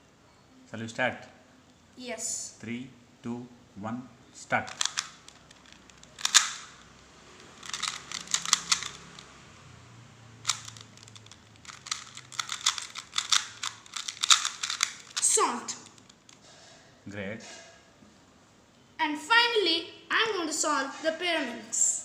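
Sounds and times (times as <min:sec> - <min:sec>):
puzzle cube clicking while turned: 0:04.6 - 0:09.3, 0:10.4 - 0:16.4.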